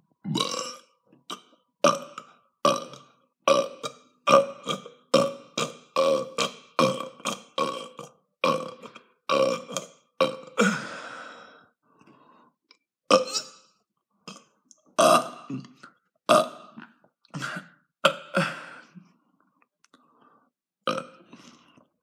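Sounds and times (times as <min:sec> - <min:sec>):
person burping: 0:00.2 - 0:11.1, 0:13.1 - 0:13.6, 0:14.3 - 0:19.0, 0:20.8 - 0:21.9.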